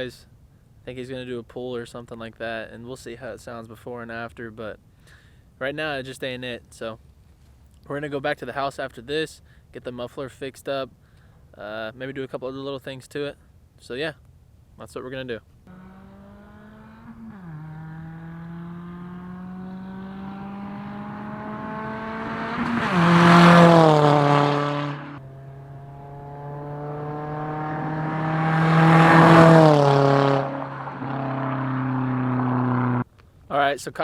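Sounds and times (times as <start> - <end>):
raspy car exhaust accelerating: 15.7 - 33.0.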